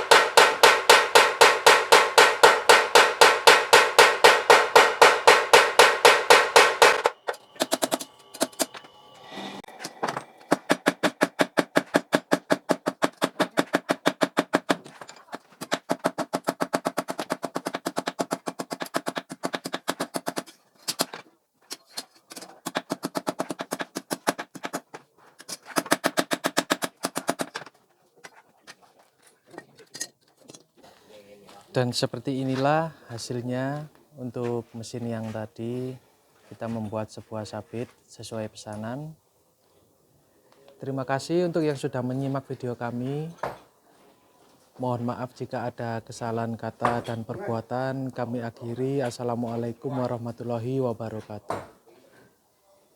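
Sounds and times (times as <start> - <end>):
power hammer pounding hot steel: 0.0 - 14.6.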